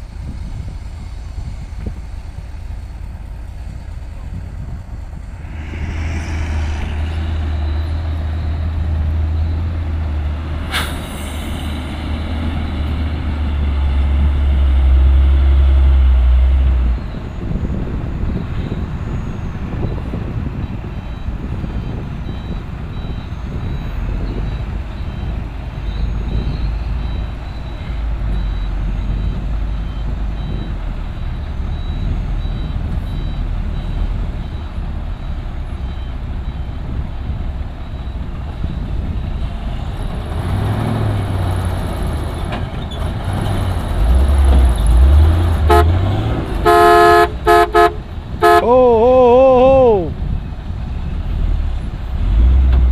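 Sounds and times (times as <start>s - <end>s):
heavy diesel engines working: 0.0s - 52.9s
brief sharp sound: 5.2s - 9.5s.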